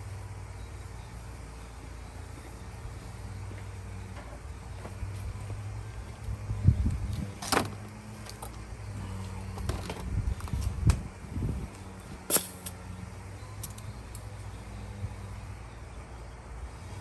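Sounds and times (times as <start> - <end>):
sharp tool clicks: 12.3 - 12.8.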